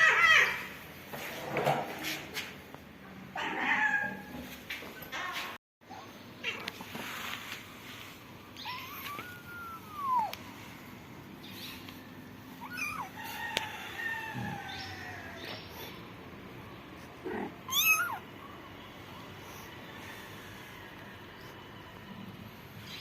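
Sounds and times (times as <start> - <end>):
cat meowing: 8.6 - 10.4, 12.6 - 13.2, 17.3 - 18.2.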